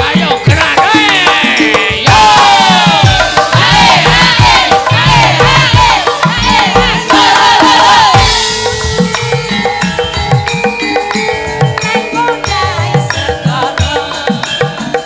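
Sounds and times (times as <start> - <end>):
gamelan music: 0.0 - 15.0
voices shouting in rhythm: 2.1 - 8.3.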